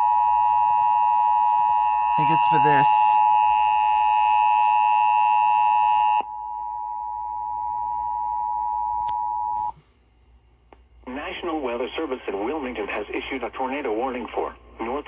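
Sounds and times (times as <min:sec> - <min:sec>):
two-tone alarm: 0:00.0 - 0:09.7.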